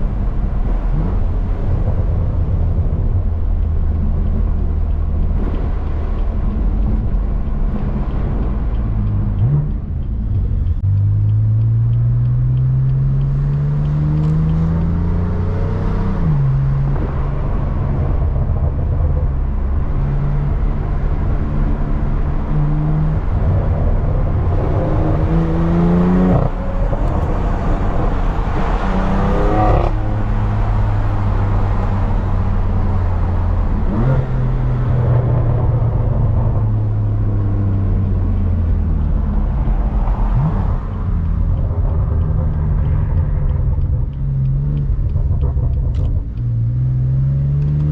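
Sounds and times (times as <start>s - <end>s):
car engine accelerating: 0.0s - 47.9s.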